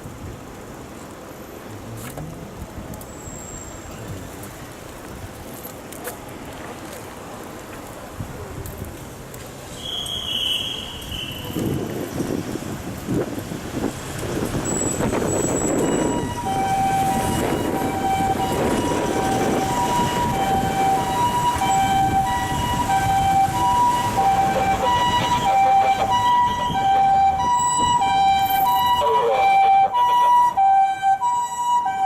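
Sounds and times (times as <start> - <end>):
two-tone ambulance siren: 14.5 - 32.0.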